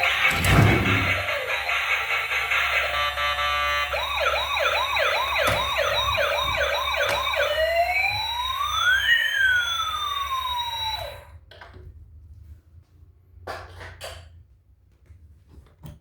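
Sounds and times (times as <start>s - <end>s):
toy electronic siren: 0.0s - 11.3s.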